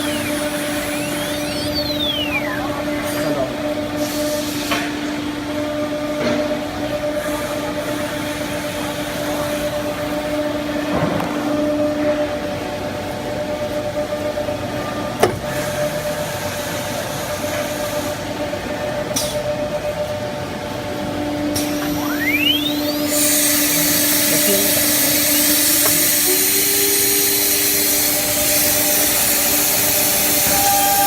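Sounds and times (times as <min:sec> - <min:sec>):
router humming: 0:00.0 - 0:04.0, 0:21.6 - 0:31.0
spindle whine and hiss: 0:00.0 - 0:31.0.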